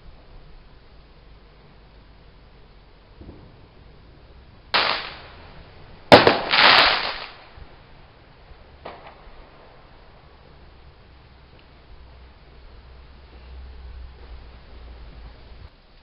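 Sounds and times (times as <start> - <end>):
fireworks bangs: 3.1 - 10.6.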